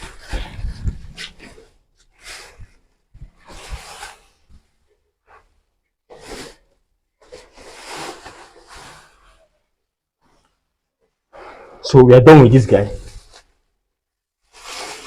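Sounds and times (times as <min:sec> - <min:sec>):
rake scraping through sawdust: 0:07.4 - 0:09.2, 0:14.5 - 0:15.0.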